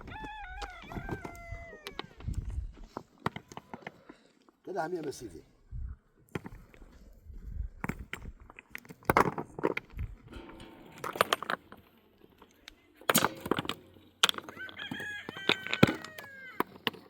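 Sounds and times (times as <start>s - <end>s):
rooster crowing: 0.0s - 2.2s, 14.4s - 16.8s
sharp knocks and scrapes: 7.8s - 17.0s.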